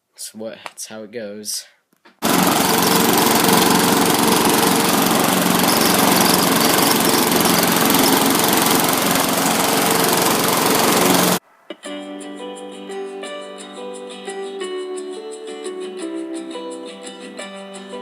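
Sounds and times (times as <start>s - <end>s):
small engine running: 2.2s - 11.4s.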